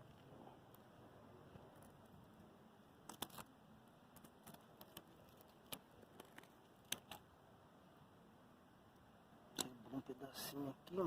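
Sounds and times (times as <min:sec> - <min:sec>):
faint clicks and crackles: 0:00.0 - 0:07.3.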